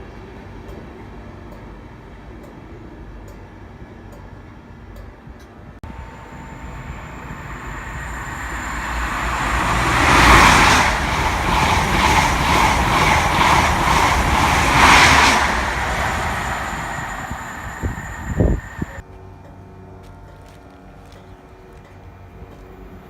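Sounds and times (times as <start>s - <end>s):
train passing at speed: 5.8s - 19.0s
train wheel clicks: 6.7s - 19.0s.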